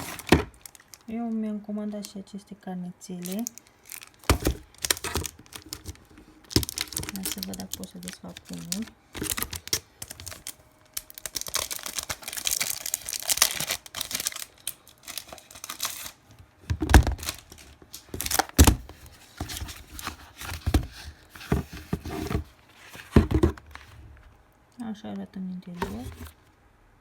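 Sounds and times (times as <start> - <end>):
wrapping torn and crinkled: 0.0 - 1.1, 3.2 - 16.3, 17.2 - 21.3.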